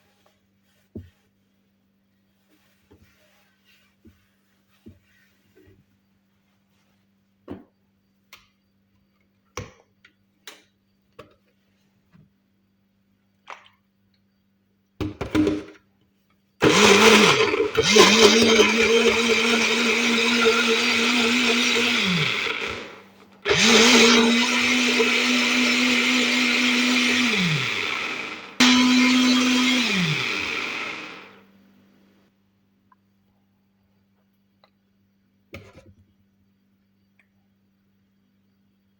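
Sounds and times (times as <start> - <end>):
blender motor running: 16.6 - 31.4.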